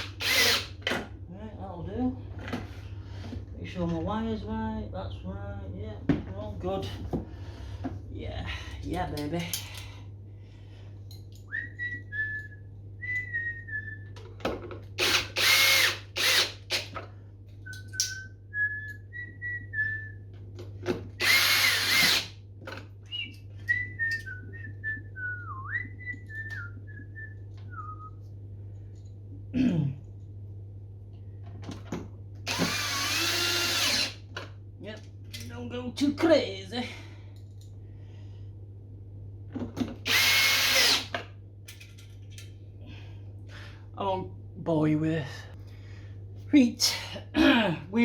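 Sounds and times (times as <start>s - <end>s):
power screwdriver running: 0.0s - 0.7s, 15.0s - 16.9s, 21.2s - 22.3s, 32.5s - 34.2s, 40.1s - 41.1s
person whistling a tune: 23.1s - 28.2s.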